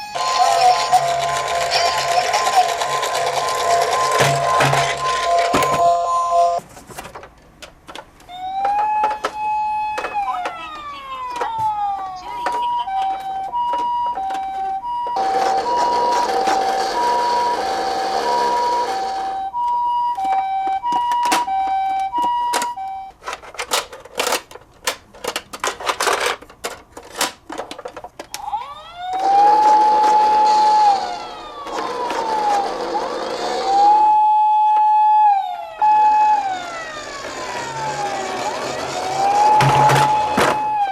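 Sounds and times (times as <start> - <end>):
toy wailing siren: 0.0 - 6.6, 8.3 - 23.1, 28.3 - 40.9
two-tone hi-lo siren: 0.0 - 6.6, 8.3 - 23.1, 28.4 - 40.9
rapid clicks and rattles: 0.6 - 5.5.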